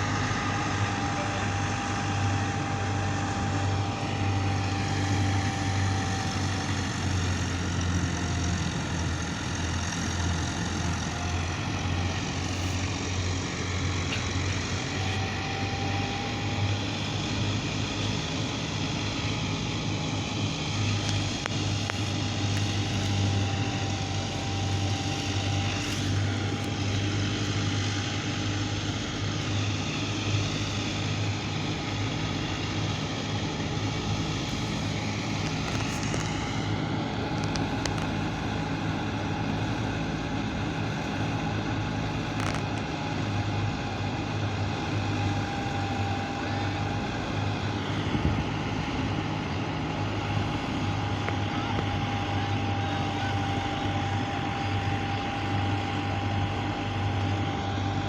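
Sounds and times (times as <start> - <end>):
harvest machine engine droning: 0.0 - 58.0.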